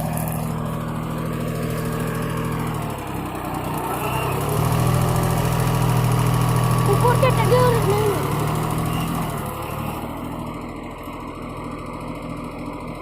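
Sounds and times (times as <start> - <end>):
small tractor engine running: 0.0 - 13.0.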